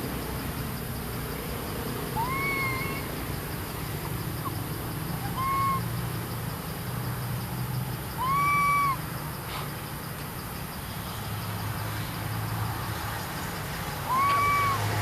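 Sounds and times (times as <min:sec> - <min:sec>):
animal whistled calls: 0:02.2 - 0:03.1, 0:05.2 - 0:05.9, 0:08.1 - 0:09.0, 0:14.0 - 0:15.0.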